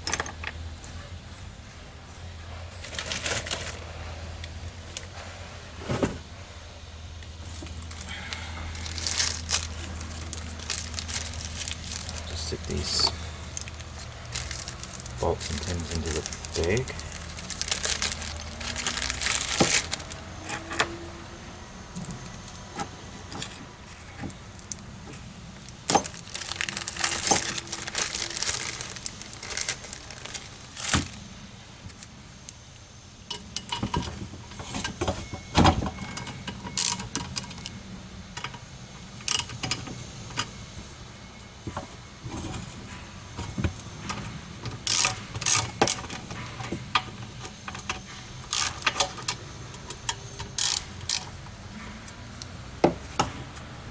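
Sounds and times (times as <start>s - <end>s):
rustling: 7.3s - 20.7s, 25.6s - 31.4s
metal parts clinking: 8.7s - 20.9s, 25.7s - 31.2s, 35.8s - 37.8s, 44.8s - 51.4s.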